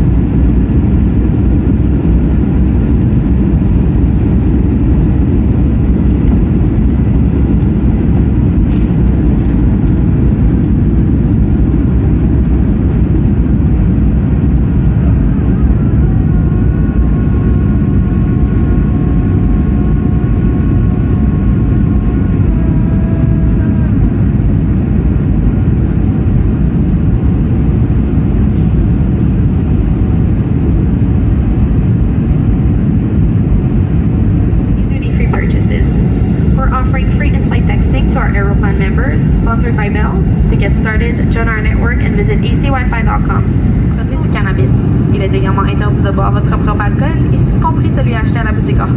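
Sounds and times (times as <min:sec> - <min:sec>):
airplane cabin engine rush: 0:00.0 - 0:48.9
faint steady tones: 0:34.8 - 0:48.9.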